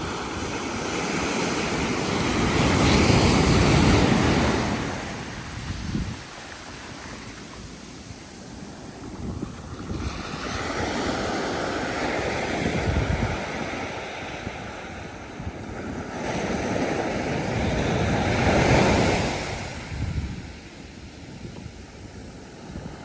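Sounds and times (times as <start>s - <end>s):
sea surf breaking on beach: 0.0s - 23.0s.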